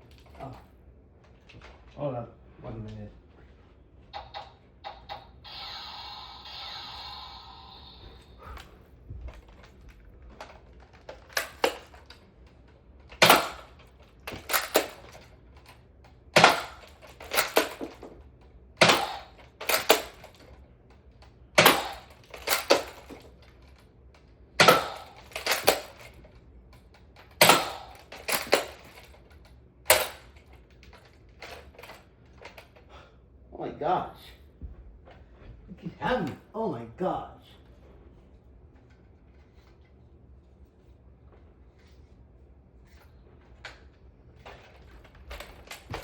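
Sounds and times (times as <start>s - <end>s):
toy dart blaster firing clacks: 13.1s - 18.2s, 18.8s - 20.6s, 21.6s - 23.4s, 24.6s - 26.2s, 27.2s - 29.2s, 29.9s - 30.4s.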